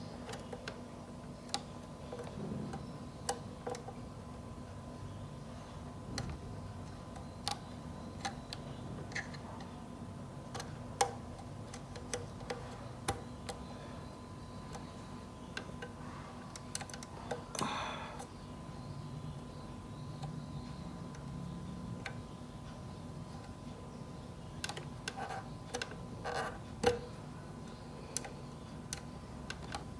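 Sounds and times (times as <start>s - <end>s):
hands clicking and tapping parts: 0.0s - 4.0s, 6.1s - 9.8s, 10.4s - 13.8s, 14.6s - 18.4s, 24.6s - 29.9s
faint steady hum: 0.0s - 29.9s.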